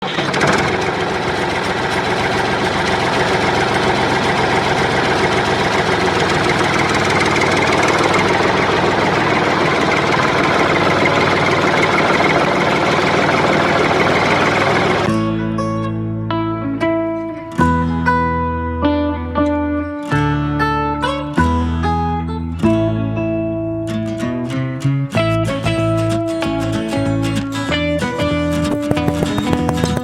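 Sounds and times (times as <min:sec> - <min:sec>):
small motor rattling: 0:00.0 - 0:15.1, 0:28.6 - 0:30.0.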